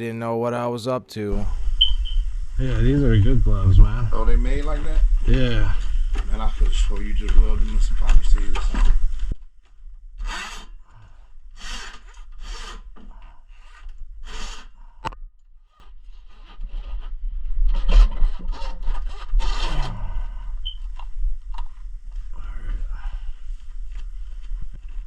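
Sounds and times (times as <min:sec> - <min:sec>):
rough scraping and rubbing: 0:01.3 - 0:09.4, 0:15.9 - 0:25.0
steady low hum: 0:01.3 - 0:15.2, 0:17.2 - 0:25.0.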